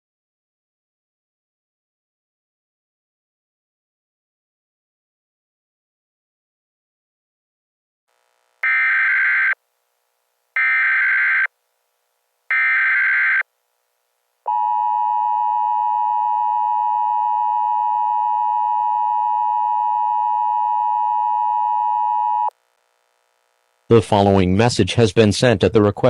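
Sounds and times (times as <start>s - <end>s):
screeching data bursts: 8.6s - 9.6s, 10.6s - 11.5s, 12.5s - 13.4s.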